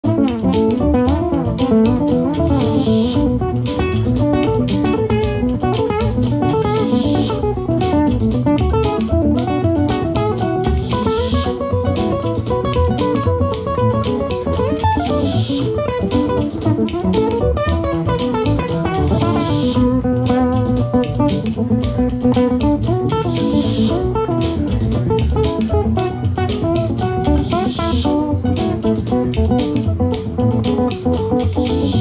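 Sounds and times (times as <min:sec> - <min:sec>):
live band playing: 0:00.0 - 0:32.0.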